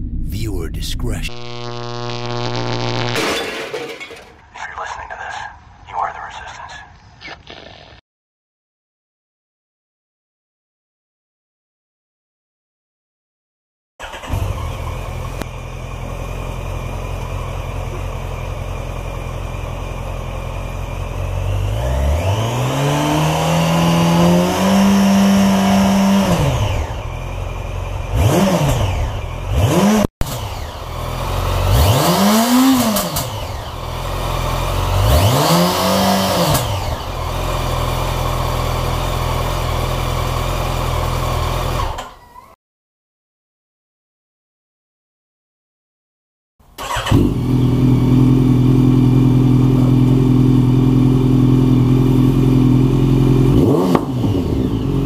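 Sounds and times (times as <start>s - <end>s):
motorcycle engine idling and revving: 14.0s - 42.2s, 46.7s - 55.0s.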